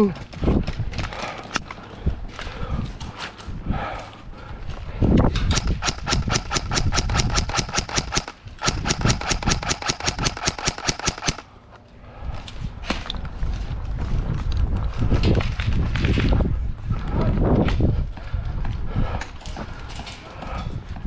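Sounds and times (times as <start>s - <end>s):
airsoft rifle full auto bursts: 5.5s - 11.4s.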